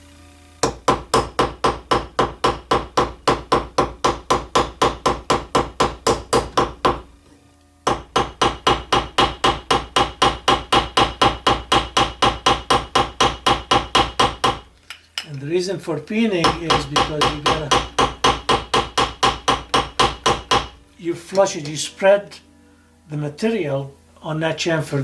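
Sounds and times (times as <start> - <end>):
hammer tapping metal pin: 16.4 - 20.8.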